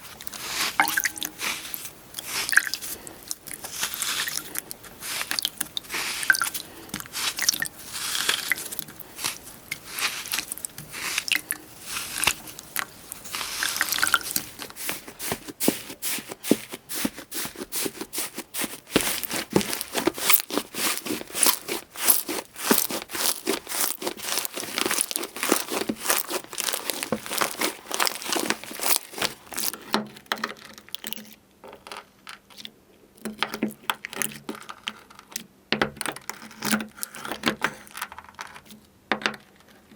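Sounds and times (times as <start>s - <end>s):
slime crackling and crunching: 0.0s - 30.0s.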